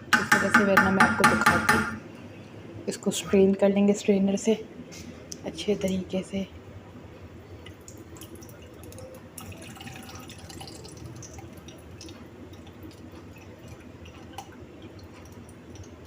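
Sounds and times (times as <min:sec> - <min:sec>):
oil dripping: 0:07.6 - 0:16.0.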